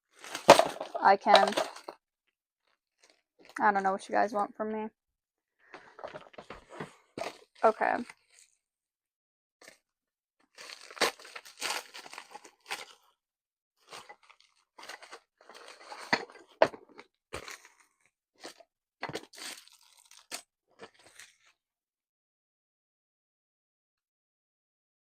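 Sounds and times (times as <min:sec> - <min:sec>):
plastic packaging crinkling: 0:00.1 - 0:01.9, 0:02.6 - 0:03.6, 0:05.8 - 0:08.6, 0:10.4 - 0:13.2, 0:13.8 - 0:21.5.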